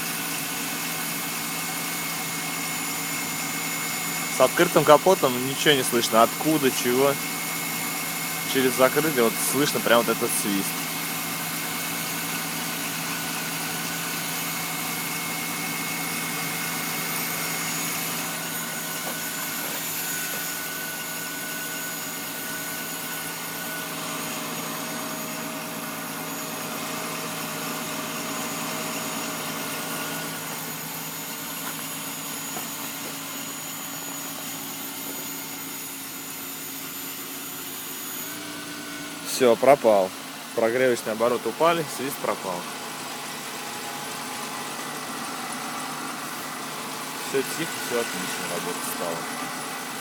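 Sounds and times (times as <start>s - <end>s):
car engine idling: 10.3s - 35.5s.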